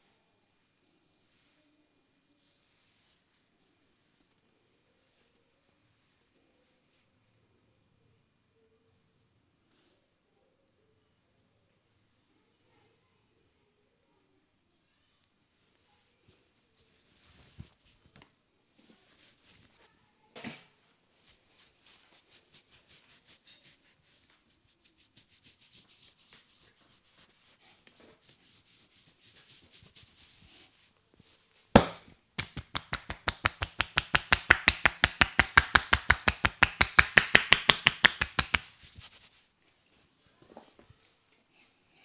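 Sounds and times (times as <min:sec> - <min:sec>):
fast run of massage strikes: 0:31.8 - 0:38.7
sharp loud slap: 0:31.8 - 0:38.7.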